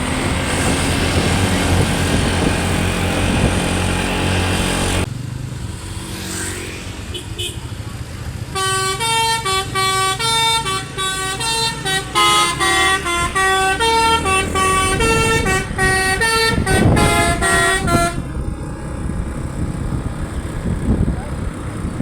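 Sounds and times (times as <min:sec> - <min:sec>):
multi-tone air horn tune: 0:08.5 - 0:18.3.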